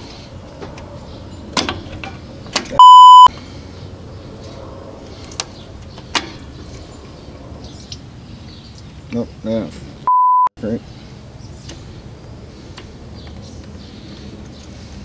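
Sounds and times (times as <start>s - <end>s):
censor bleep: 2.8s - 3.3s, 10.1s - 10.5s.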